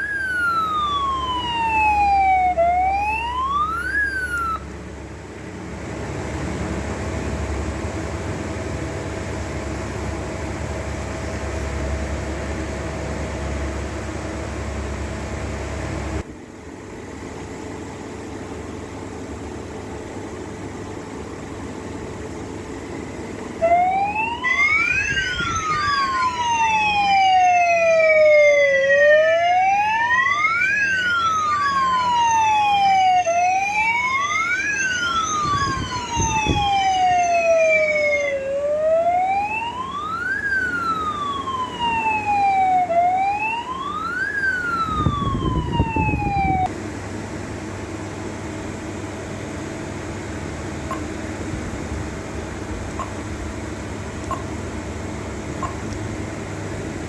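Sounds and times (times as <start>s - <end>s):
fire alarm sirens wailing: 0.0s - 4.8s, 23.6s - 46.7s
steady background hum: 0.0s - 57.0s.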